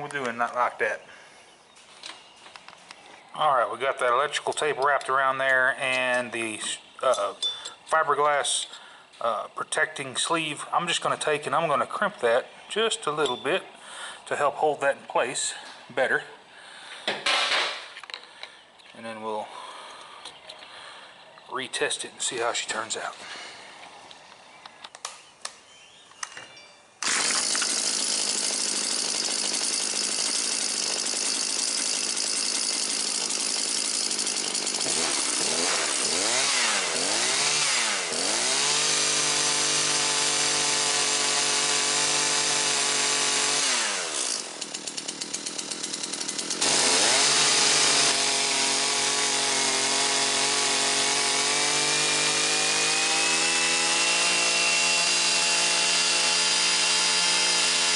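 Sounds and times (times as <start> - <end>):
clicks: 24.1 - 26.5
two-stroke engine revving: 27.0 - 57.9.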